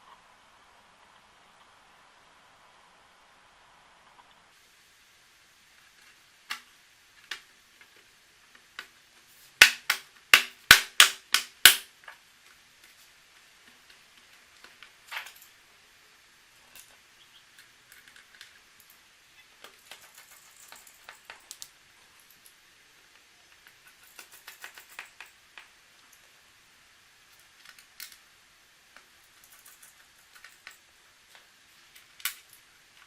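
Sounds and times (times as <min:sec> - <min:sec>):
sharp clicks of laptop parts: 0:06.5 - 0:08.0, 0:09.6 - 0:12.2, 0:23.6 - 0:25.8
rustling: 0:16.5 - 0:26.6.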